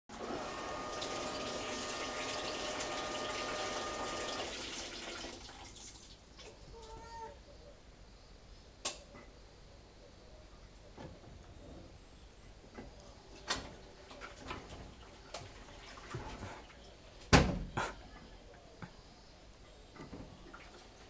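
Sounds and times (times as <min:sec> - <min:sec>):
water sloshing in washing machine: 0:00.1 - 0:06.6, 0:13.4 - 0:16.8, 0:20.2 - 0:21.0
washing machine knocks: 0:17.3 - 0:17.8.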